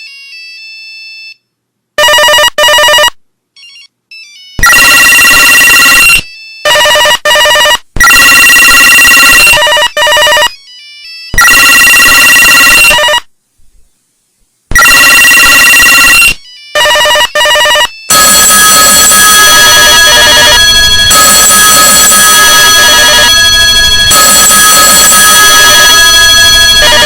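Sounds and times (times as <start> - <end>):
telephone ringtones: 2.0 - 5.5, 6.3 - 7.8, 9.1 - 13.3, 15.3 - 27.0.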